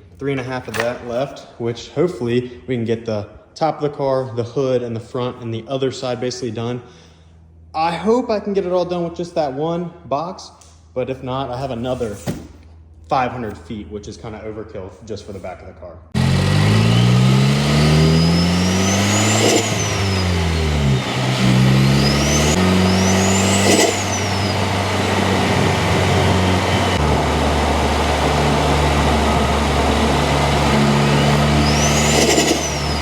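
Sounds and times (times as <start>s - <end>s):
car engine accelerating: 16.1s - 33.0s
turbo whistle: 16.7s - 33.0s.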